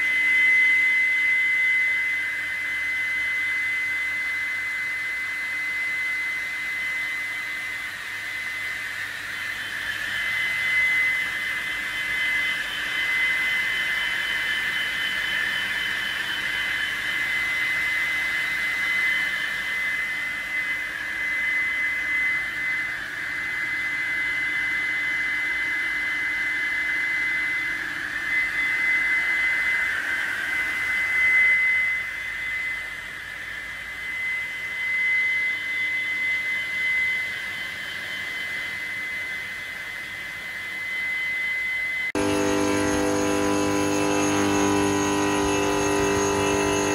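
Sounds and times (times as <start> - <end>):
stone cutting machine whining: 42.1 - 46.9.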